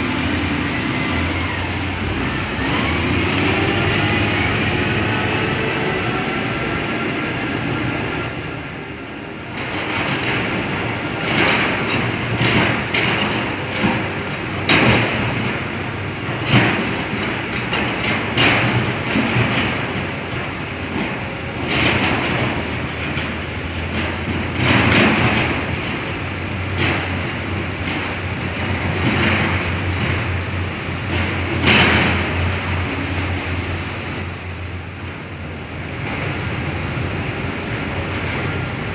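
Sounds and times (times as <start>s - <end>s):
heavy machinery engine running: 0.0s - 38.9s
metal clanks and knocks: 9.6s - 32.8s.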